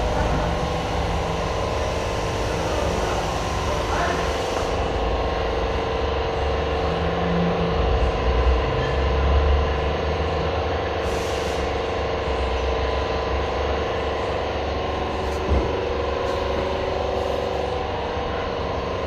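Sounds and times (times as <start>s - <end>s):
machine hum with hiss and rumble: 0.0s - 19.0s.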